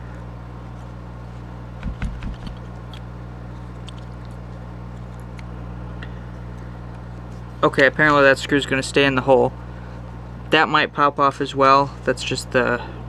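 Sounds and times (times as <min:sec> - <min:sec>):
steady electrical hum: 0:00.0 - 0:13.0
low bumps: 0:01.8 - 0:02.6
small clicks and taps: 0:01.8 - 0:03.0.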